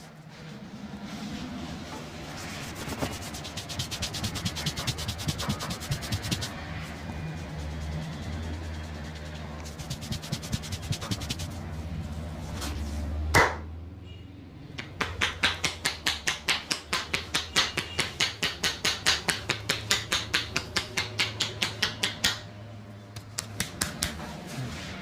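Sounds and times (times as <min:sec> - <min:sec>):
chopping blows of percussion massage: 0:02.8 - 0:09.0, 0:09.7 - 0:11.6, 0:14.8 - 0:22.5, 0:23.2 - 0:24.2
hand slaps on body: 0:23.2 - 0:24.2.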